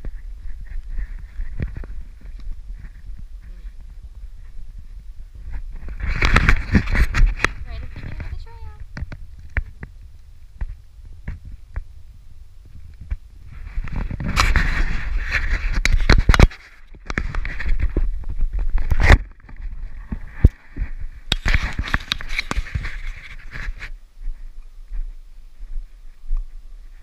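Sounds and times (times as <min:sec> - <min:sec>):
microphone rustling and scraping: 0:00.0 - 0:11.9, 0:12.6 - 0:27.0
low rumble: 0:00.0 - 0:15.3.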